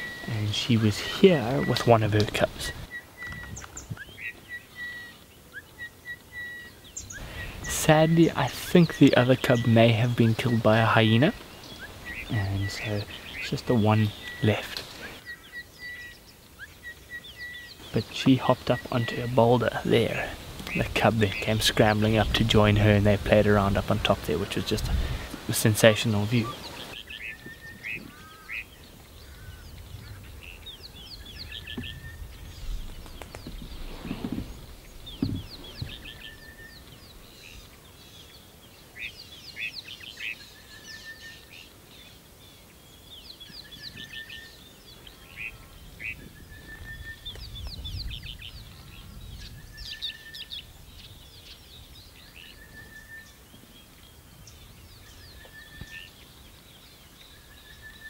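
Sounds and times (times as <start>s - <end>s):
low wind rumble: 0.0s - 4.3s, 6.8s - 16.2s, 17.3s - 27.0s, 27.6s - 38.7s, 42.9s - 57.5s
quick bird chirps: 31.4s - 37.2s
soft knocks: 35.2s - 36.0s.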